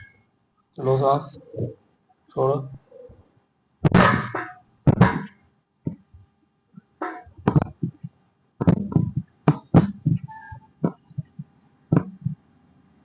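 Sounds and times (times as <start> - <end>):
brief squeak: 10.3 - 10.7.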